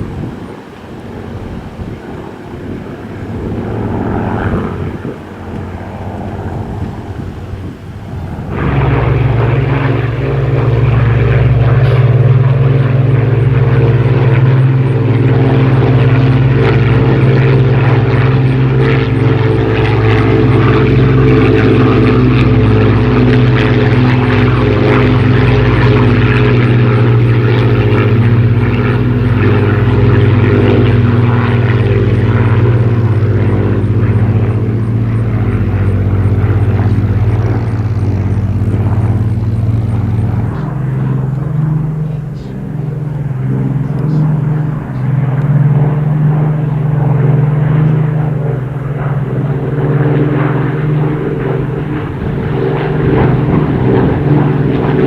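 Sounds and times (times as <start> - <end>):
propeller plane engine running: 0.0 - 55.0.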